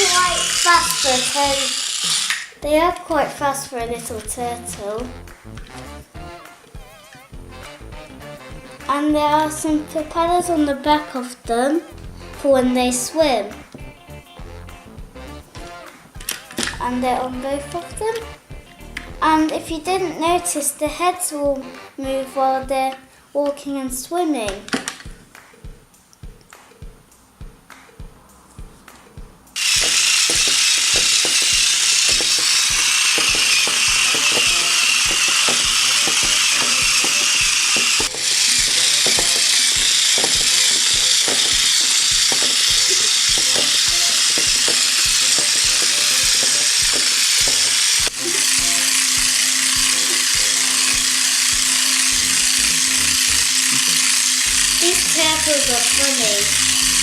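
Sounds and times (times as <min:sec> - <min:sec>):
loud steady hiss: 0:00.0 - 0:02.6, 0:29.6 - 0:57.0
toy walking mechanism clicking: 0:00.0 - 0:03.3, 0:16.2 - 0:16.9, 0:29.6 - 0:57.0.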